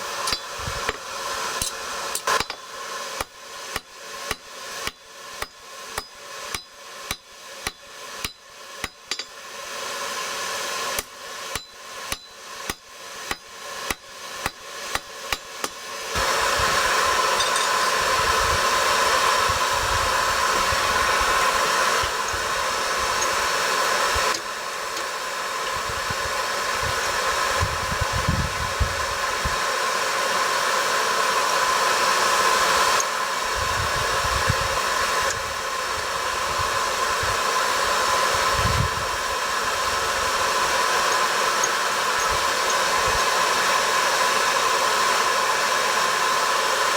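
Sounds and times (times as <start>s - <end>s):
hammer striking steel on anvil: 0.2s - 9.5s, 11.0s - 16.3s, 17.3s - 18.0s.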